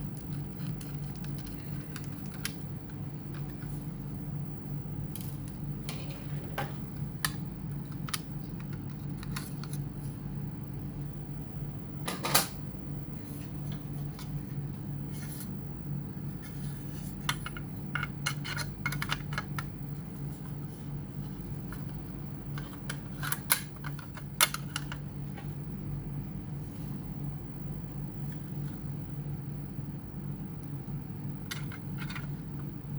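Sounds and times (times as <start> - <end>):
steady low hum: 0.0 - 32.9.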